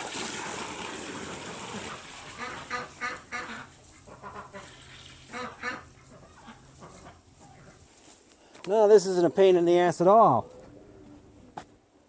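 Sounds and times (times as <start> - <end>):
waterfowl honking: 1.8 - 7.2.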